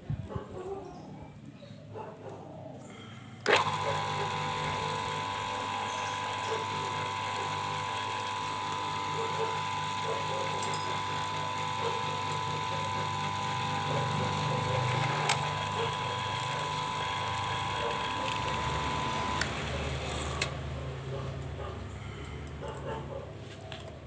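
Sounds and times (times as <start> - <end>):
lathe motor whine: 3.4 - 20.6
sharp mechanical clicks: 3.4 - 20.6.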